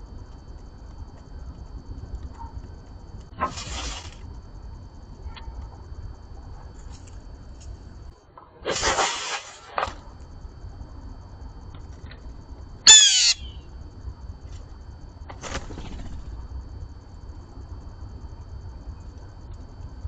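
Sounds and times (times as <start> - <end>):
blue jay calls: 12.9 - 13.6.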